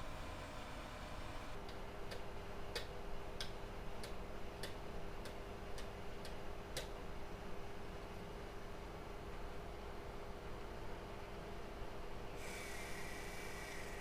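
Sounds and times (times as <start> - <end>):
radiator fan motor humming: 0.0 - 1.6.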